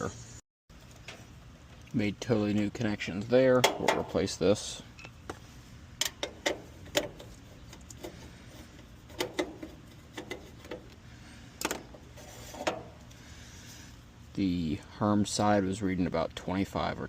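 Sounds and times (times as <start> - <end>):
hand tools clicking and tapping: 6.0 - 11.0.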